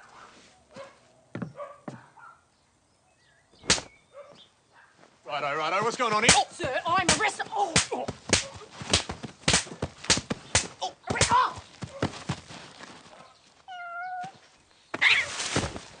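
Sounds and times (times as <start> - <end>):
sharp knocks: 3.6 - 3.9, 6.1 - 11.4.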